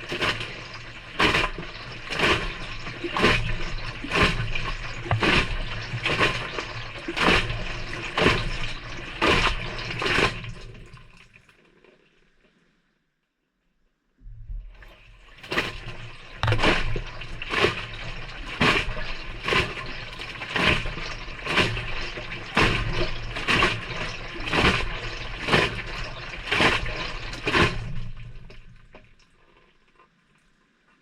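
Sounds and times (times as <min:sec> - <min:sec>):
wet laundry splashing in drum: 0:00.0 - 0:12.1, 0:14.6 - 0:29.9
washing machine motor hum: 0:00.4 - 0:10.1.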